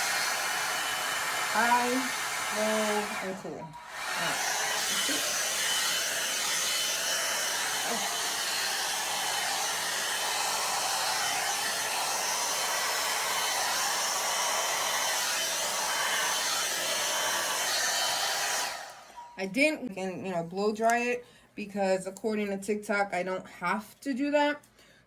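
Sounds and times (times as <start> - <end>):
hair dryer blowing air: 0.0 - 19.2.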